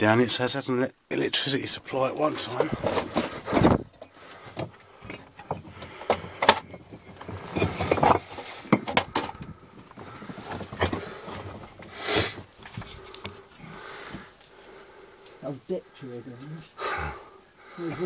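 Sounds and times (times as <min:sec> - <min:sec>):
loose bricks knocking and scraping: 0:01.9 - 0:14.4
rustling scrape: 0:02.3 - 0:04.6, 0:06.3 - 0:08.7, 0:09.8 - 0:13.6.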